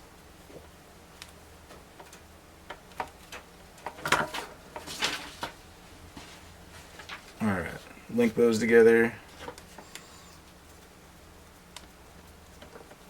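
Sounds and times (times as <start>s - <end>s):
rustling: 3.1s - 8.0s.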